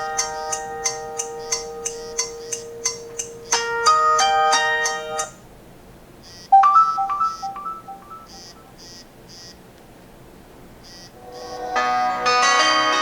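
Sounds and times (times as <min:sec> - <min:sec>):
high ticking beat: 0:00.0 - 0:05.3, 0:06.5 - 0:08.6
electronic ringtone melody: 0:06.6 - 0:08.6.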